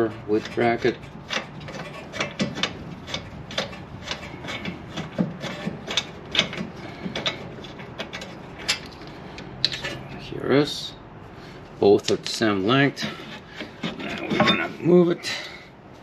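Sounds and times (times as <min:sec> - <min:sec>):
metal clicks knocks and scraping: 0:00.0 - 0:10.2, 0:13.0 - 0:14.8.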